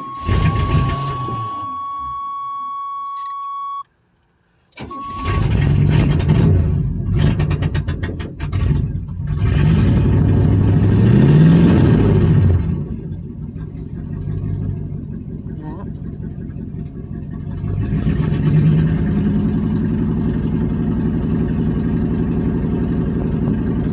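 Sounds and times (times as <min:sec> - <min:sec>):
engine cranking and revving: 0:00.0 - 0:02.2, 0:04.8 - 0:23.9
steady buzzer tone: 0:00.0 - 0:03.8.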